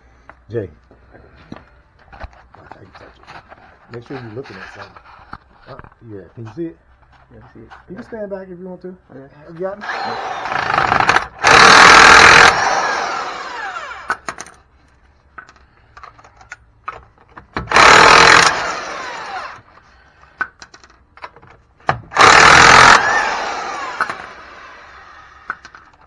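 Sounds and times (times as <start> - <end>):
impact wrench hammering: 9.9 - 14.4, 17.6 - 19.6, 21.9 - 24.5.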